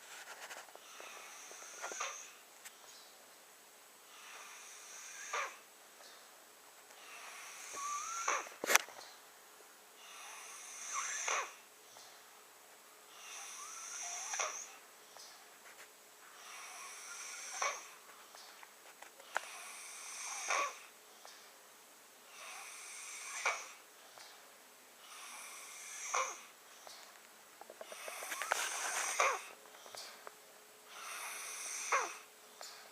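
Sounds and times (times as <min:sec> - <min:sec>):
boy snoring with whistling breaths: 0:00.8 - 0:02.4, 0:04.1 - 0:05.7, 0:07.0 - 0:08.7, 0:10.0 - 0:11.6, 0:13.1 - 0:14.8, 0:16.4 - 0:18.0, 0:19.2 - 0:20.9, 0:22.3 - 0:23.8, 0:25.0 - 0:26.6, 0:27.8 - 0:30.1, 0:30.9 - 0:32.9.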